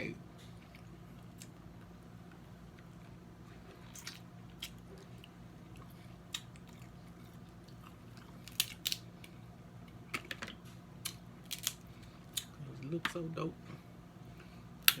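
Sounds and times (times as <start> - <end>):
faint low hum: 0.0 - 15.0
chewing: 2.7 - 8.8
crab shells cracking: 7.6 - 12.5.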